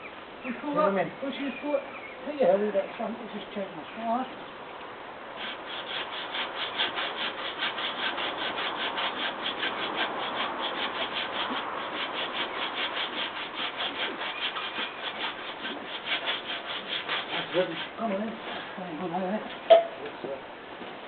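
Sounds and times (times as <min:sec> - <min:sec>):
hand saw cutting wood: 0:05.4 - 0:18.5.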